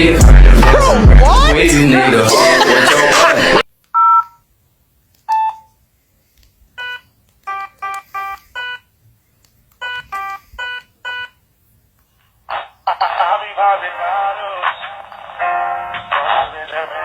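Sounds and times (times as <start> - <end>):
electronic phone ringtone beeps: 4.0 - 4.4.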